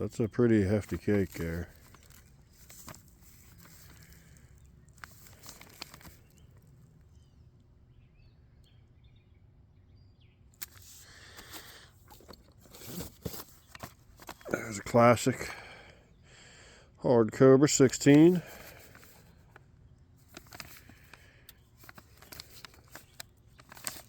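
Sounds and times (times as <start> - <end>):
low outdoor background noise: 0.0 - 24.0
cardboard knocks and crinkles: 0.7 - 4.4, 5.0 - 6.4, 12.1 - 14.5.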